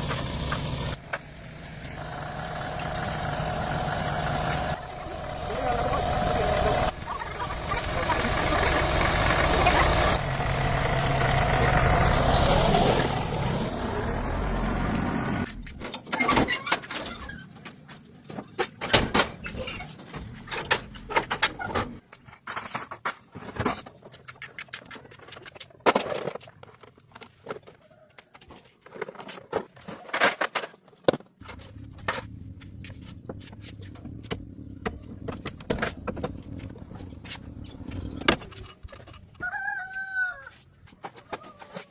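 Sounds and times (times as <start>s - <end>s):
car engine running: 0.0s - 15.5s, 31.4s - 38.4s.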